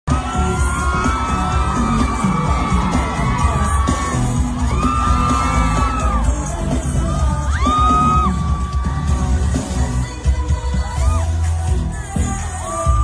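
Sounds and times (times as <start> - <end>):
audience yelling and cheering: 0.1 - 13.0
live pop song with singing: 0.1 - 13.0.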